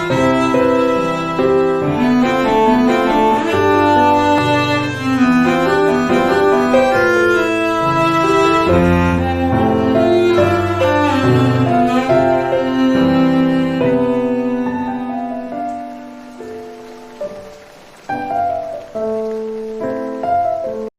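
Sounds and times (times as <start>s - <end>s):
bowed strings: 0.0s - 16.3s
piano: 0.0s - 20.9s.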